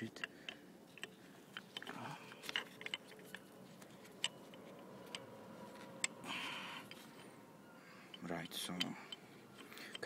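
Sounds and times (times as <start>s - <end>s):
metal parts clicking and tapping: 0.0s - 5.3s, 8.1s - 10.0s.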